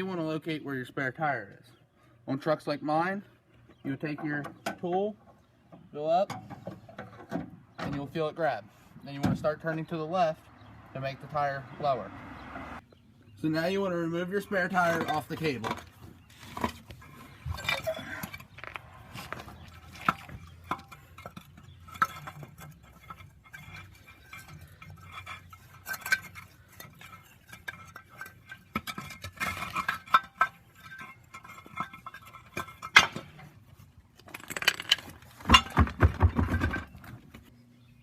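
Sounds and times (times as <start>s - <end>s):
metallic clinks and rattles: 17.0s - 33.1s, 34.2s - 35.8s.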